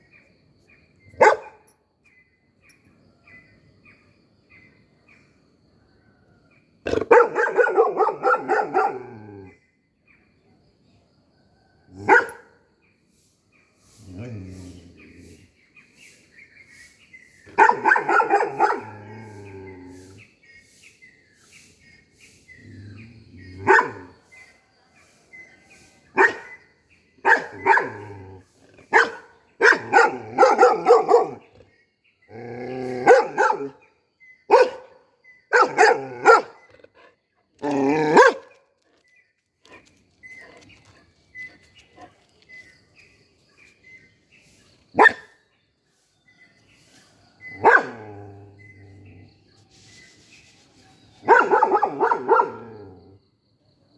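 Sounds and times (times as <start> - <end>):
dog barking: 1.2 - 1.6, 6.8 - 9.1, 12.0 - 12.6, 17.6 - 19.5, 23.5 - 24.2, 26.2 - 26.6, 27.2 - 28.1, 28.9 - 31.5, 32.8 - 33.8, 34.5 - 36.7, 38.1 - 38.6, 45.0 - 45.4, 47.5 - 48.7, 51.2 - 53.0.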